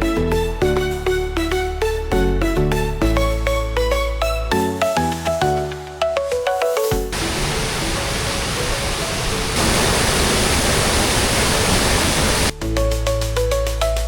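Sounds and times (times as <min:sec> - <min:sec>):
background music: 0:00.0 - 0:09.9, 0:12.4 - 0:14.0
waterfall rushing: 0:07.1 - 0:12.5.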